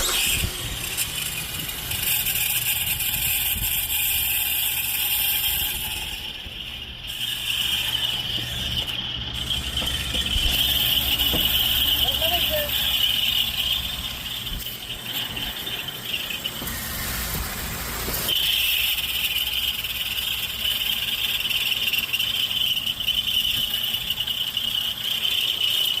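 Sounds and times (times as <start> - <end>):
high-pitched alternator squeal: 0.0 - 26.0
car engine running: 7.9 - 18.4.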